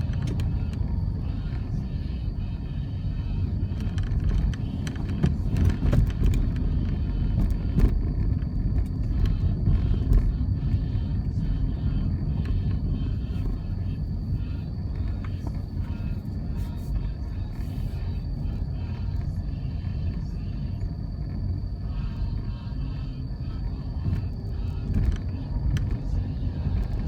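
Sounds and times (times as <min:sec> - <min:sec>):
vehicle engine and road rumble: 0:00.0 - 0:27.0.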